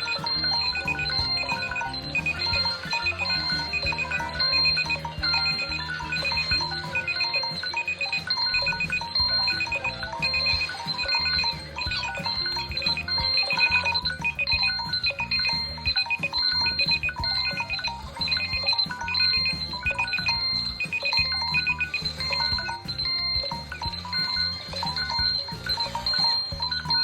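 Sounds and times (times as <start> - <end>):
electronic ringtone melody: 0.0 - 27.0.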